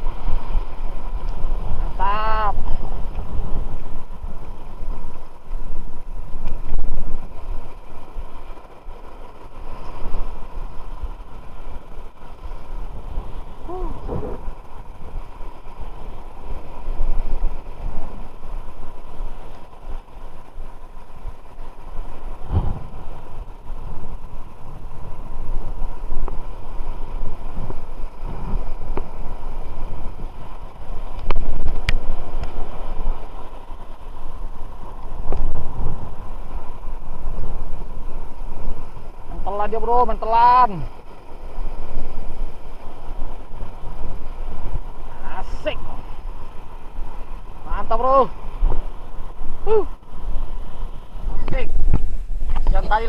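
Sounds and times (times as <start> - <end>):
wind buffeting microphone: 0.0 - 53.0
brief wavering call: 13.6 - 14.4.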